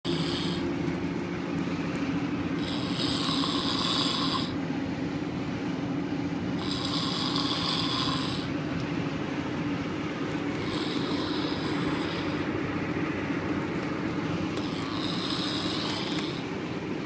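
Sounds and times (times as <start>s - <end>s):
vehicle hum: 0.0s - 17.0s
man snoring: 0.1s - 0.7s, 2.6s - 4.6s, 6.6s - 8.5s, 10.5s - 12.5s, 14.6s - 16.5s.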